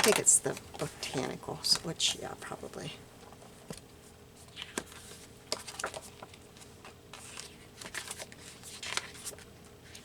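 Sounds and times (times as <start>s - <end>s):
faint steady hum: 0.0s - 10.0s
paper pages rustling: 4.4s - 10.0s.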